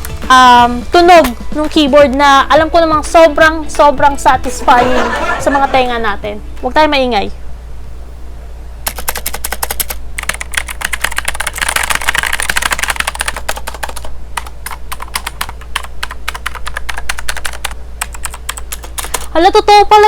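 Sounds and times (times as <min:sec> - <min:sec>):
typing on mechanical keyboard: 0:08.9 - 0:19.3.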